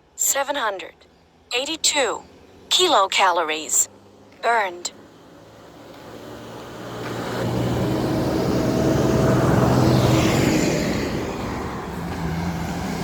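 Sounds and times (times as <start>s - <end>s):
vehicle driving past: 3.9s - 13.0s.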